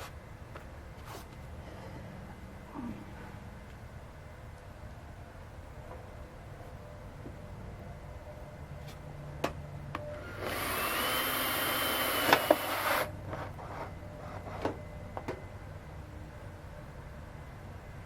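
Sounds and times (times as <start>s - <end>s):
pneumatic shears cutting metal: 10.2s - 13.1s.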